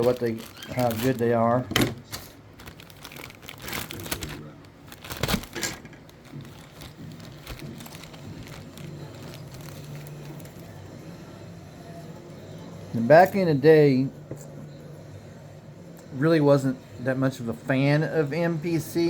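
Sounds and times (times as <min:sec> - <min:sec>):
plastic bags crinkling: 0:00.0 - 0:10.9.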